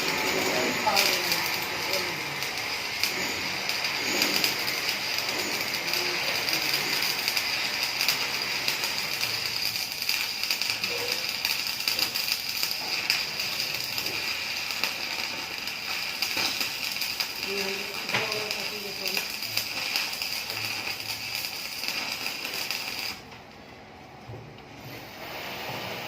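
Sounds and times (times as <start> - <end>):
arc welding crackling hiss: 0.0 - 23.4, 24.8 - 26.0.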